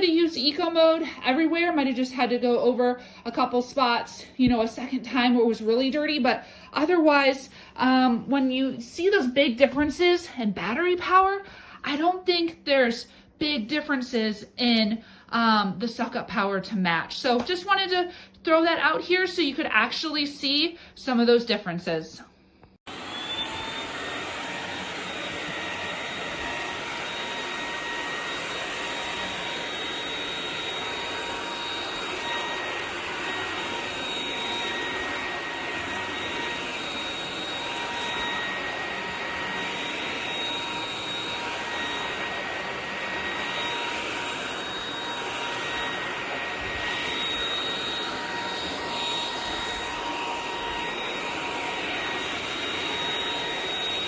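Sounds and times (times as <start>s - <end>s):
vacuum cleaner motor whine: 22.9s - 54.0s.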